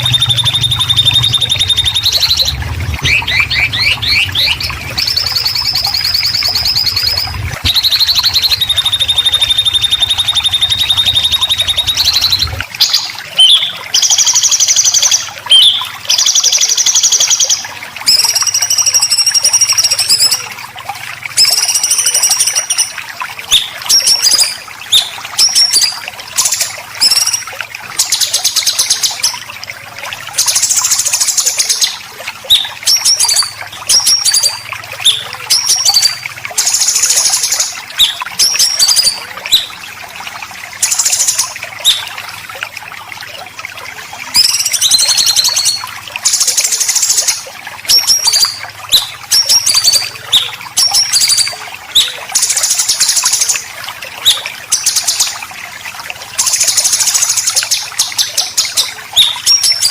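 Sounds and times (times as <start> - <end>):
low hum: 0.0 - 12.6.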